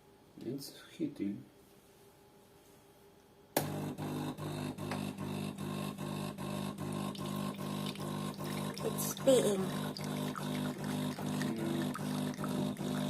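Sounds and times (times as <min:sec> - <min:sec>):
coffee machine pump pulsing hum: 0:03.6 - 0:13.0.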